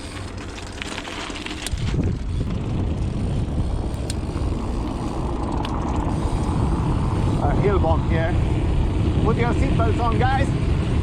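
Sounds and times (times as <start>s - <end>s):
bike clicks and rattles: 0.0s - 8.3s
bike tyre noise: 0.0s - 11.0s
wind rumble on microphone: 0.1s - 11.0s.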